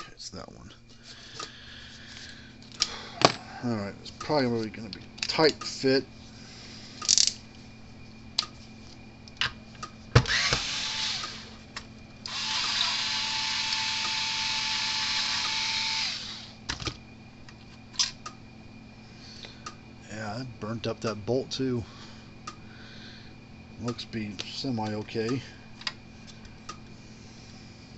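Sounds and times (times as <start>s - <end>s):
small power drill running: 10.3s - 11.6s, 12.3s - 16.6s.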